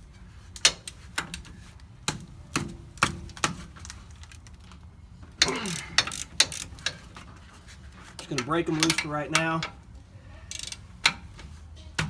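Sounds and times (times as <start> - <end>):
sharp metallic clicks and knocks: 0.5 - 7.4, 8.2 - 9.9
socket wrench clicking on bolts: 5.4 - 7.3, 8.2 - 9.8, 10.5 - 11.5.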